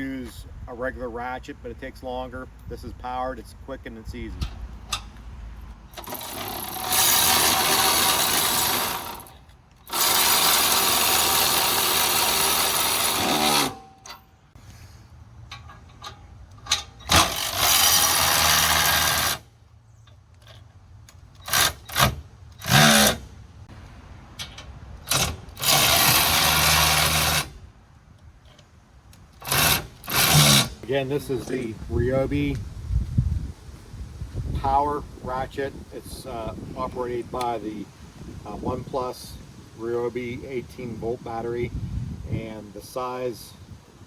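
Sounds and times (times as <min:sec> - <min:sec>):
cordless ratchet running: 0:05.9 - 0:13.8, 0:17.1 - 0:19.5.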